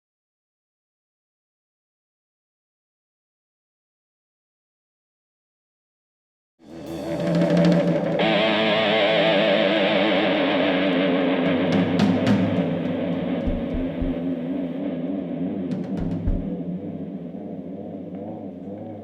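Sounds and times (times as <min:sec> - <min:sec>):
live band music: 0:06.7 - 0:14.4, 0:15.7 - 0:16.5
wavering guitar tones: 0:06.8 - 0:19.0
low drum beats: 0:11.5 - 0:14.6, 0:15.7 - 0:16.7.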